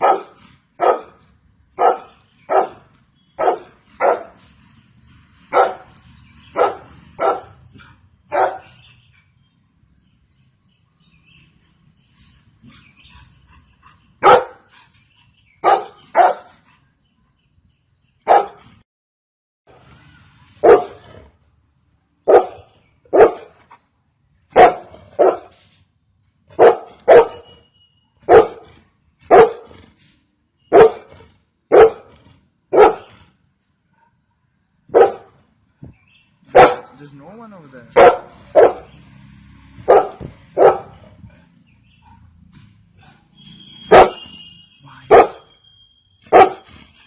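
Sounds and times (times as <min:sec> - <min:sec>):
dog barking: 0:00.0 - 0:01.2, 0:01.8 - 0:04.4, 0:05.5 - 0:05.9, 0:06.5 - 0:07.6, 0:08.3 - 0:08.8, 0:14.2 - 0:14.7, 0:15.6 - 0:16.5, 0:18.2 - 0:18.7, 0:20.6 - 0:21.1, 0:22.2 - 0:23.6, 0:24.5 - 0:25.6, 0:26.5 - 0:27.6, 0:28.2 - 0:28.7, 0:29.3 - 0:29.8, 0:30.7 - 0:32.1, 0:32.7 - 0:33.2, 0:34.9 - 0:35.4, 0:36.5 - 0:37.0, 0:37.9 - 0:39.0, 0:39.8 - 0:41.2, 0:43.8 - 0:44.4, 0:45.1 - 0:45.6, 0:46.3 - 0:46.7.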